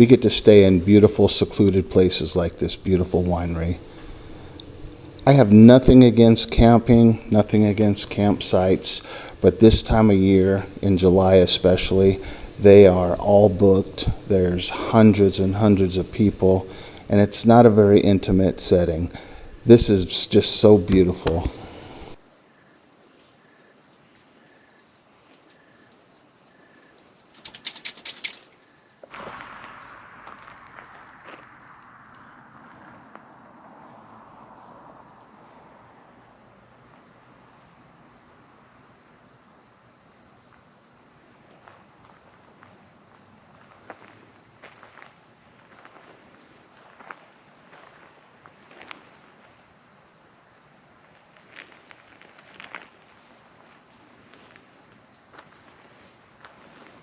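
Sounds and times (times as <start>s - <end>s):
crickets chirping: 0.0s - 57.0s
faint clicks: 3.7s - 5.3s, 8.0s - 9.9s, 16.1s - 17.1s, 18.6s - 22.2s.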